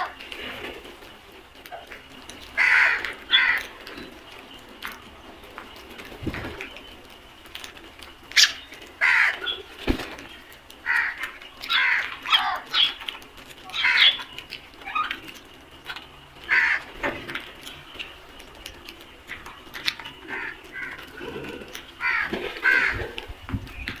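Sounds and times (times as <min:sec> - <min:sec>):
crows cawing: 0:02.6 - 0:03.9, 0:08.4 - 0:09.7, 0:10.8 - 0:13.0, 0:13.7 - 0:15.1, 0:16.4 - 0:17.1, 0:20.1 - 0:23.3.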